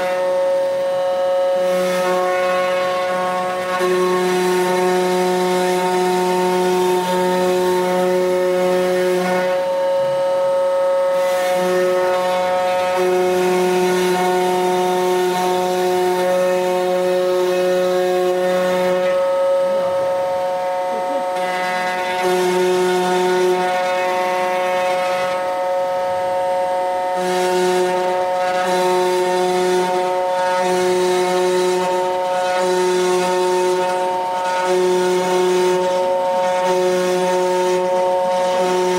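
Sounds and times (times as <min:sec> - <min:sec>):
lower router tones: 0:00.0 - 0:38.9
wood router high-pitched whine: 0:00.0 - 0:38.9.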